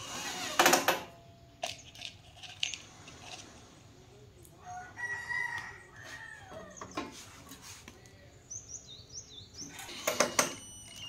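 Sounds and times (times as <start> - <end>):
rooster crowing: 4.6 - 6.8
small birds chirping: 5.6 - 11.0.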